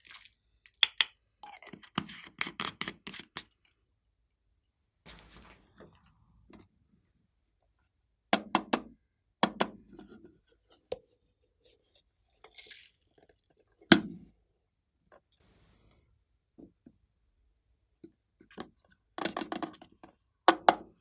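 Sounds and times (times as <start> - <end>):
short hiss: 5.1 - 6.5, 15.4 - 16.5.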